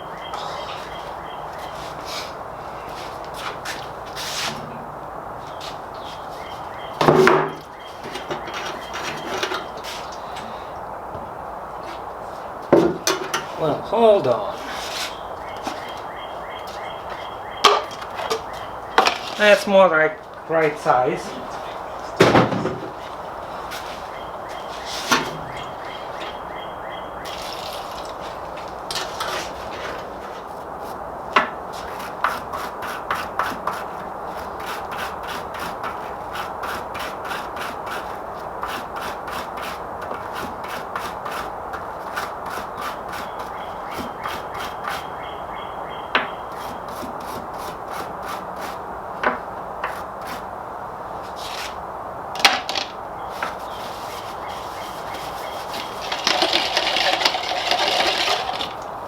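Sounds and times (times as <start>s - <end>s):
sharp knocks: 7.0s - 8.5s, 12.7s - 13.4s, 17.6s - 18.4s, 22.2s - 23.0s
hand scrubbing metal: 53.4s - 58.8s.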